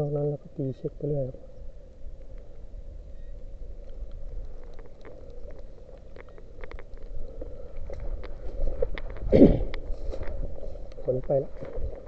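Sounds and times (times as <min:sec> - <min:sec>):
low rumble on microphone: 0:00.0 - 0:12.0
faint clicks: 0:03.3 - 0:11.8.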